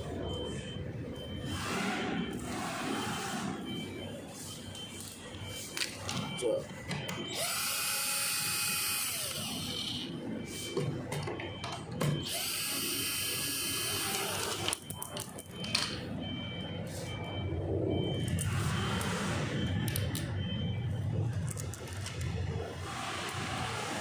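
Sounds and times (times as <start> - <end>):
clicks and handling noise: 4.8 - 7.2, 14.2 - 16.0, 19.8 - 20.3, 21.2 - 22.4
small electric motor whirring: 7.4 - 10.1, 12.3 - 14.7.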